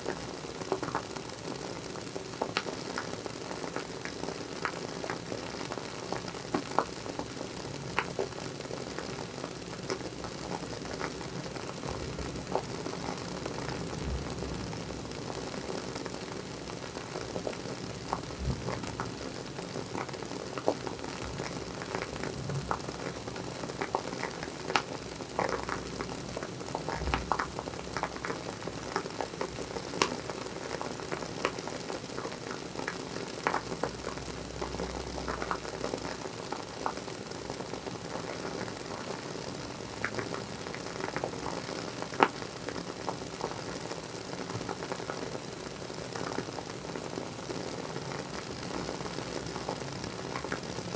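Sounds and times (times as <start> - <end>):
faint steady hiss: 0.0 - 50.9.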